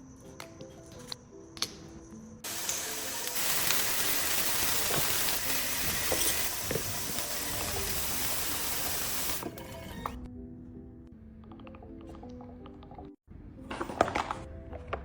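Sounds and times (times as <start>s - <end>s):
shower head spraying water: 2.5s - 9.4s.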